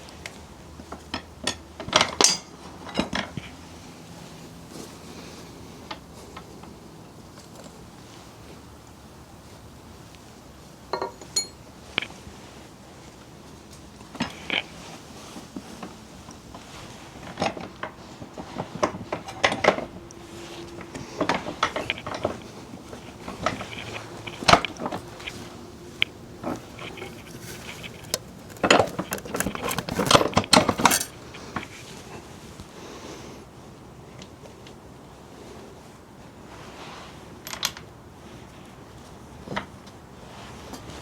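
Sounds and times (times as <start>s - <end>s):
metal tools clinking and knocking: 10.9s - 11.6s, 23.0s - 31.4s
rattling clicks: 21.2s - 31.3s.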